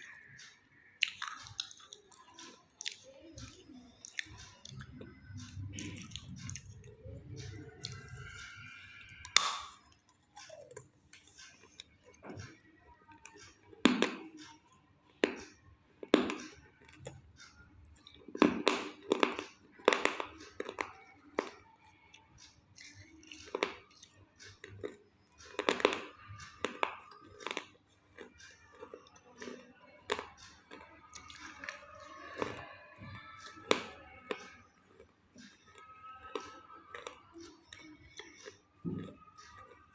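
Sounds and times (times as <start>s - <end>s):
chewing: 0.0s - 39.9s
clay crunching when bitten: 9.3s - 9.8s.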